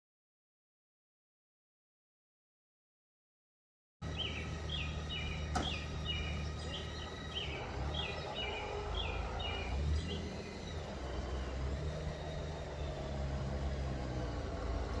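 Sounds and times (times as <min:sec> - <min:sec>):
songbird chirping: 0:04.0 - 0:15.0.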